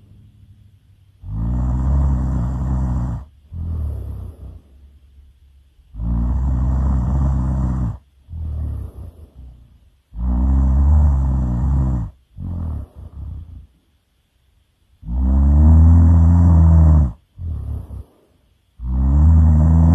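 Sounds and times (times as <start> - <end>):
loud snoring: 1.2 - 4.7, 5.9 - 13.7, 15.0 - 18.1, 18.8 - 19.9.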